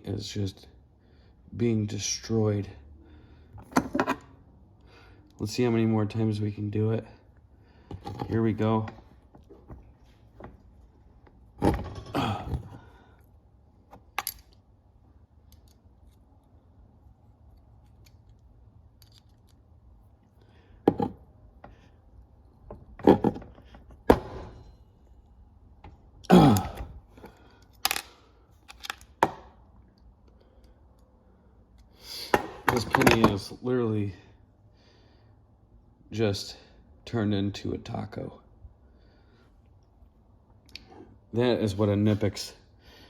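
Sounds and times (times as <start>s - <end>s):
metal pliers clicking and clanking: 14.1s - 14.6s, 26.6s - 29.1s.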